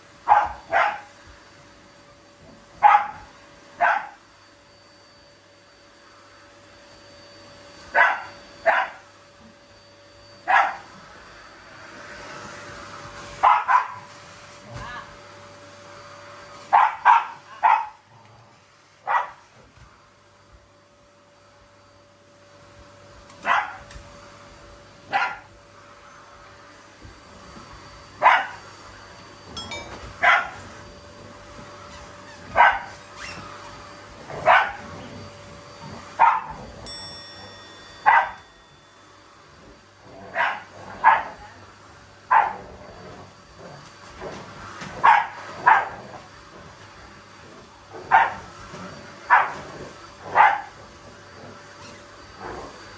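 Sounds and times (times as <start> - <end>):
dog barking: 0.2 - 1.1, 2.8 - 4.2, 7.9 - 9.0, 10.5 - 10.9, 13.4 - 14.1, 16.7 - 18.0, 19.0 - 19.4, 23.4 - 23.9, 25.1 - 25.5, 28.2 - 28.6, 30.2 - 30.7, 32.5 - 33.3, 34.3 - 35.0, 36.2 - 36.7, 38.0 - 38.5, 40.3 - 41.6, 42.3 - 42.7, 45.0 - 46.0, 48.0 - 48.5, 49.3 - 49.6, 50.3 - 50.8.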